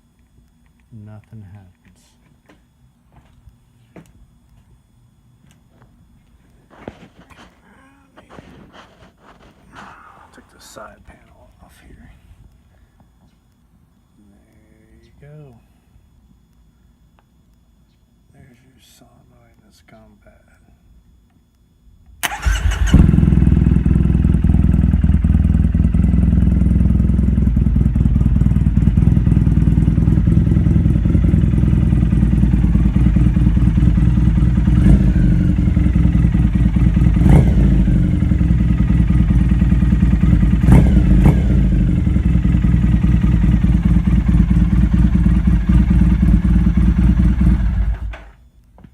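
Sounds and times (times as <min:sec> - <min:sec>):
motorcycle engine running: 0:22.2 - 0:48.4.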